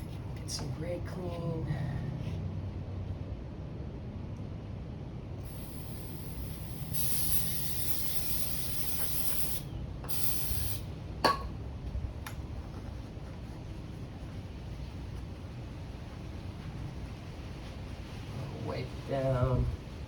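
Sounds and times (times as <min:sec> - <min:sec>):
aerosol spray hissing: 0:05.4 - 0:10.9.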